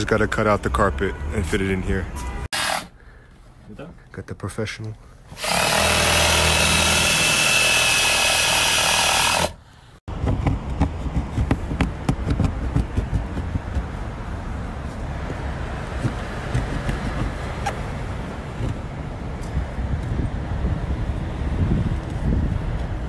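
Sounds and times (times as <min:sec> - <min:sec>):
power tool cutting carpet: 0:05.4 - 0:09.5.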